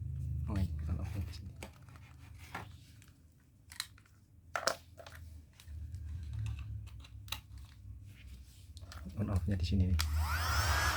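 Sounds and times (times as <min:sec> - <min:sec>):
plastic clicks and handling: 0:01.5 - 0:07.9.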